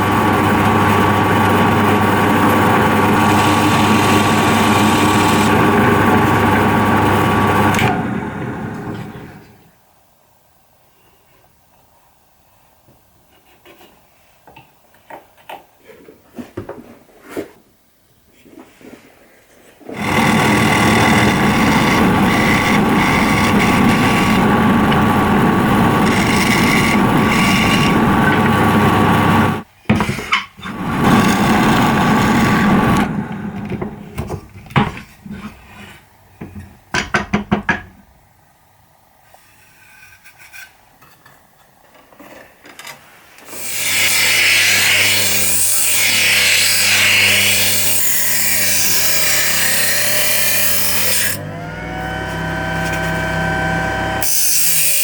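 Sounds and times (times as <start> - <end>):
power tool sanding wood: 0.0 - 9.3, 19.9 - 29.7, 30.7 - 33.6, 43.6 - 55.0
knocks and clatter: 36.4 - 38.0.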